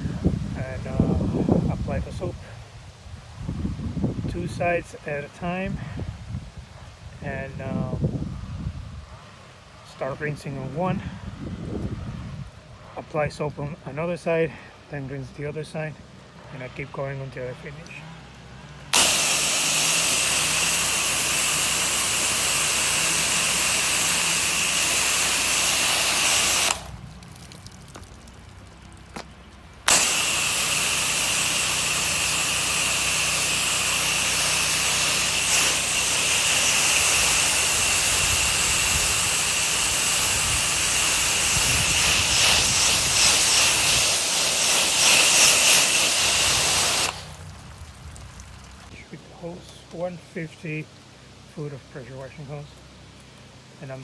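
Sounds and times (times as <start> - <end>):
pressure washer spraying water: 17.6 - 48.9.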